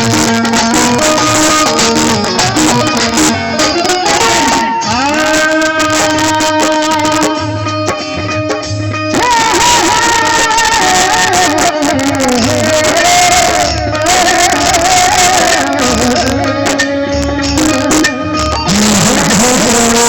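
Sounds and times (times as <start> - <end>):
person singing ornamented notes: 0.0 - 8.3
instrumental backing with low drum: 0.0 - 20.0.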